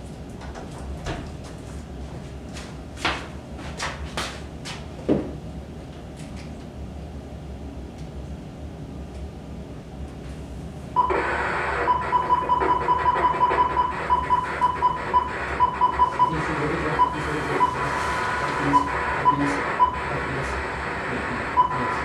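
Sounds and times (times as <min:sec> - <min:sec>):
radio high tone with pulse: 0:11.0 - 0:22.0.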